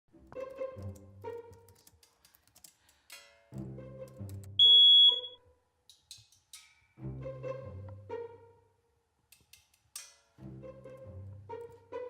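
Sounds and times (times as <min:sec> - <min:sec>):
background music: 0:00.1 - 0:12.0
smoke alarm beep: 0:04.6 - 0:05.4.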